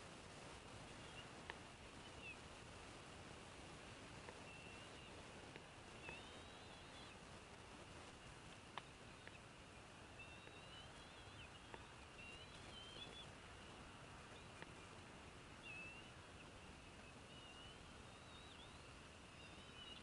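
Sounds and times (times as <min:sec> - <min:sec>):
background hiss: 0:00.0 - 0:20.0
faint ticks: 0:00.9 - 0:02.2, 0:04.2 - 0:15.1
high-pitched bird calls: 0:04.4 - 0:05.2, 0:05.9 - 0:07.2, 0:10.1 - 0:15.0, 0:15.6 - 0:20.0.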